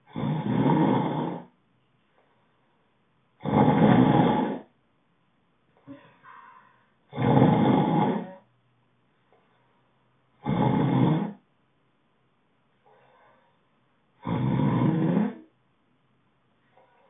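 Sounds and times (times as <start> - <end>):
loud snores: 0.0 - 1.5, 3.4 - 4.7, 7.1 - 8.4, 10.4 - 11.4, 14.2 - 15.5
faint breath: 5.8 - 7.0, 9.3 - 10.0, 12.8 - 13.8.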